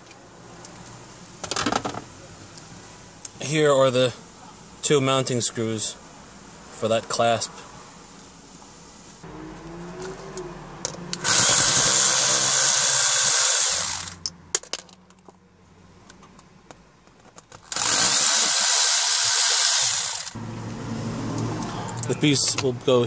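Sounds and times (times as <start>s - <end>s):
power drill running: 11.2s - 14.2s, 17.7s - 20.4s.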